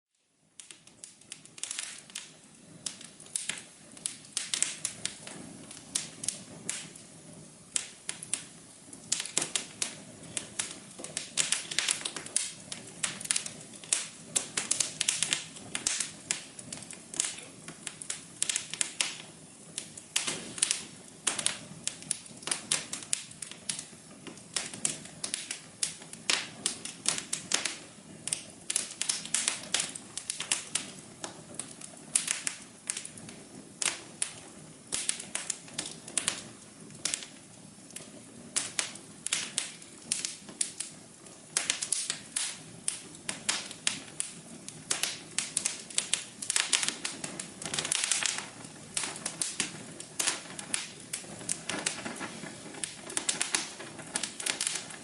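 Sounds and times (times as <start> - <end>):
wood fire crackling: 0.1 - 55.0.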